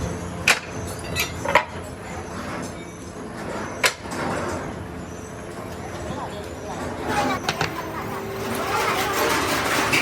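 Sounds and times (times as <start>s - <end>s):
workshop hum: 0.0s - 10.0s.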